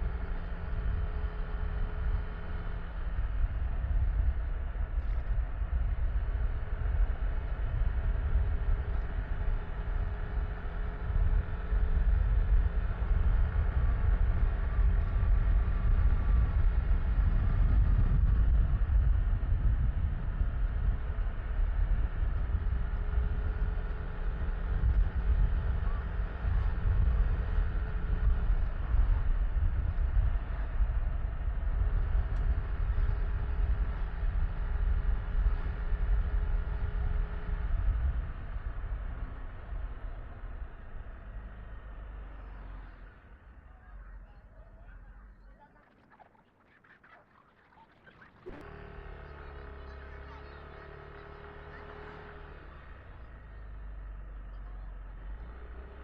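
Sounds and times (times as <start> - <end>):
wind rumble on microphone: 0.0 - 43.1
scooter engine running: 0.0 - 46.6, 47.9 - 56.0.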